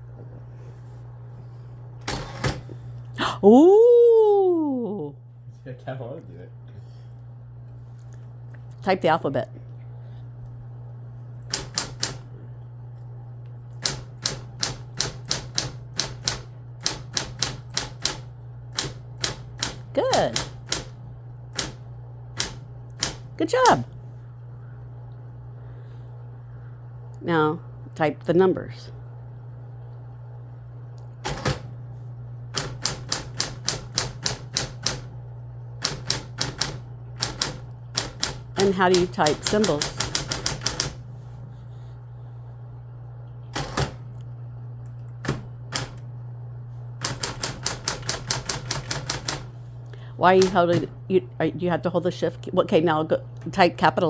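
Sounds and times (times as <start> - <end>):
steady low hum: 0.0 - 54.0
typewriter keys striking: 11.5 - 12.2, 13.8 - 21.0, 21.6 - 21.8, 22.4 - 23.3, 32.6 - 35.1, 35.8 - 41.0, 43.6 - 44.0, 47.0 - 49.5.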